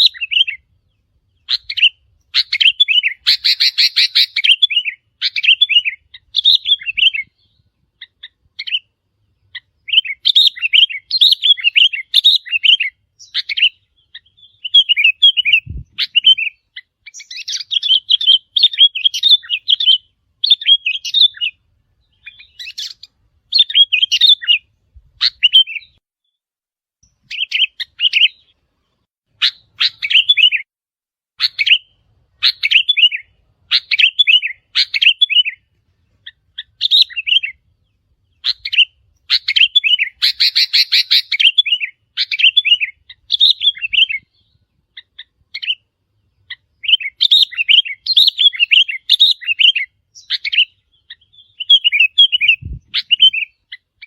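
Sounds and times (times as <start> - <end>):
bird song chirping phrases: 0.0 - 26.4, 27.0 - 30.7, 31.4 - 54.0.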